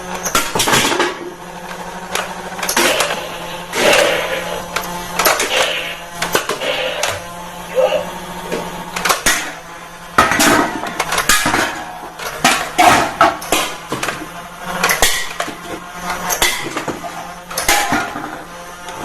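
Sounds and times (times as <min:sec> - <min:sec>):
plastic toy guns clattering: 0:00.1 - 0:07.1, 0:09.0 - 0:09.4, 0:10.2 - 0:14.2.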